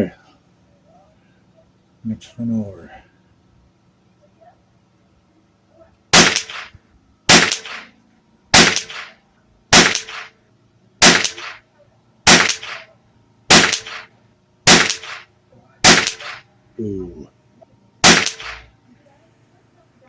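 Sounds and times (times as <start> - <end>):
rifle shots with echo: 6.1 - 10.3, 11.0 - 11.6, 12.3 - 12.9, 13.5 - 14.1, 14.7 - 16.4, 18.0 - 18.7.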